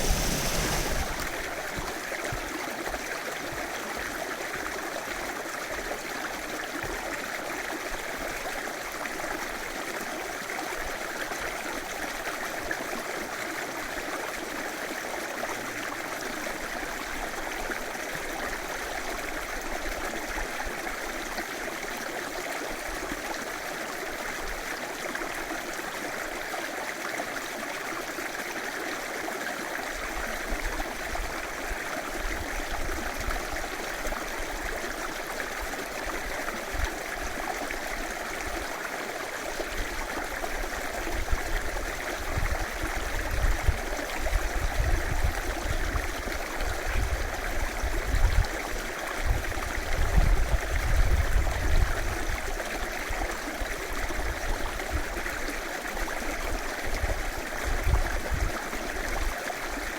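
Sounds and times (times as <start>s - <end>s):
river water over stones: 0.0s - 50.8s.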